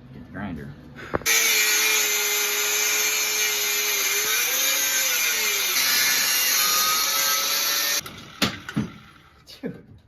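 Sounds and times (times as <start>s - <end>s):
angle grinder grinding steel: 1.3s - 9.2s.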